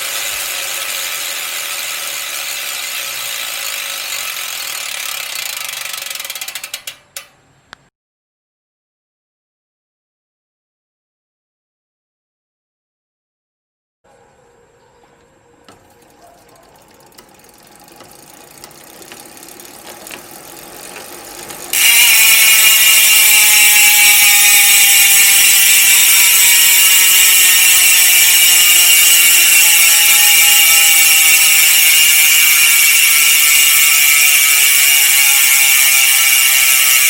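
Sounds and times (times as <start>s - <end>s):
bicycle hub freewheel buzzing: 0.0s - 7.5s, 15.6s - 37.0s.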